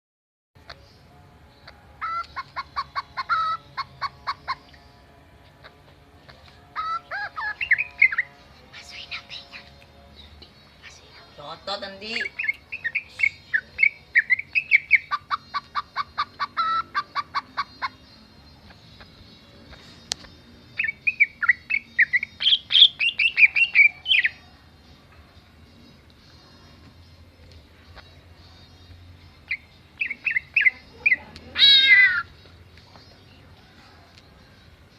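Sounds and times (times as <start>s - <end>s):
bird singing chirping notes: 0.6s - 34.9s
bird mimicking chicken clucks: 1.6s - 4.8s, 6.8s - 8.3s, 13.8s - 18.0s.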